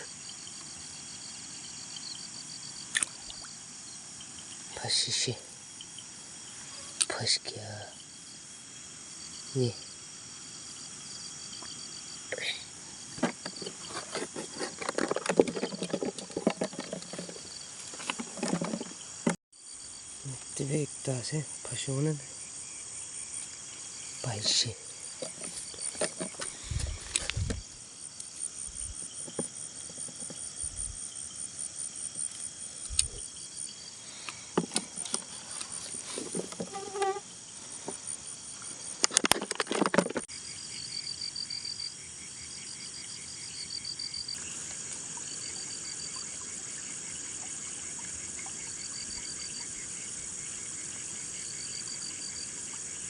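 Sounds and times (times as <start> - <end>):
crickets and insects chirring: 0.0 - 53.0
knocks and rustles: 13.1 - 19.4, 24.4 - 27.7, 28.8 - 30.8, 34.6 - 37.2, 39.0 - 40.3
handling clatter: 13.2 - 19.4, 24.4 - 27.6, 39.0 - 40.3.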